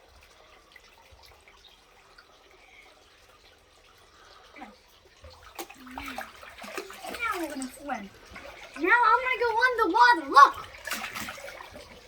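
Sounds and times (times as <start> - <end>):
water dripping in a bathtub: 0.0 - 12.0.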